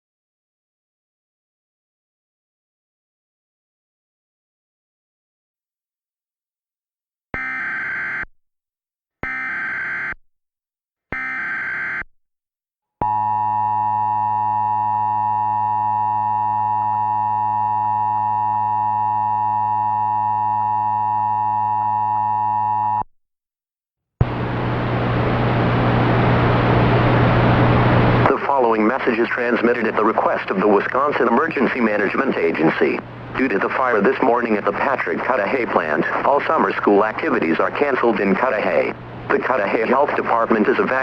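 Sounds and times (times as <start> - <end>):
hiss with low hum: 24.3 - 28.3.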